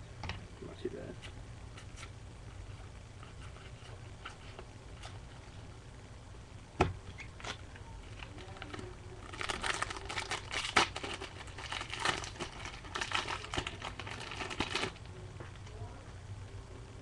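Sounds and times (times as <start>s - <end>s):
wrapper tearing and crinkling: 8.2s - 15.0s.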